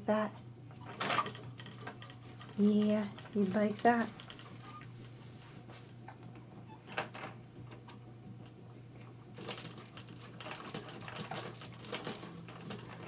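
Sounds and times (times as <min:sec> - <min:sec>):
plastic toy clicking and rattling: 0:09.4 - 0:13.0.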